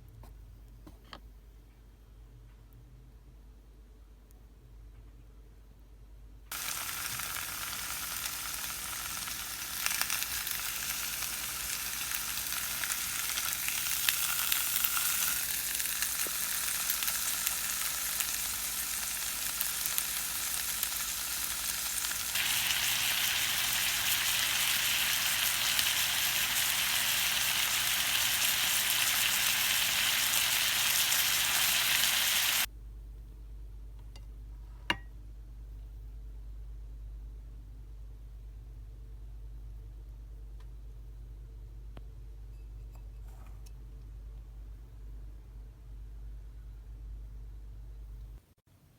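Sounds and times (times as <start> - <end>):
food sizzling in a pan: 6.5 - 32.7.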